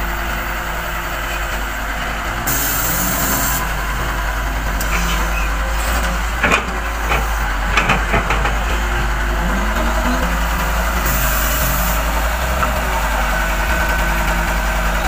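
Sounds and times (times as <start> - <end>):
heavy machinery running: 0.0 - 15.0.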